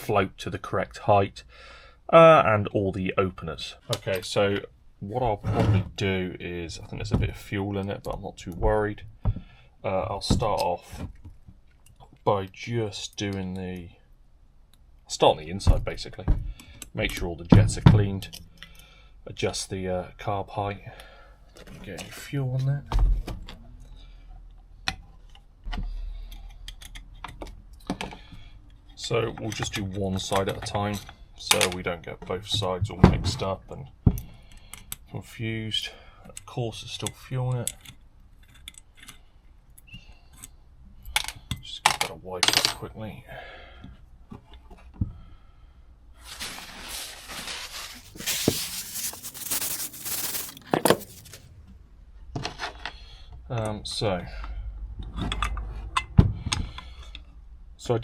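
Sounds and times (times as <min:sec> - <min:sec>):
rustling and rubbing cloth: 0:46.2 - 0:51.4.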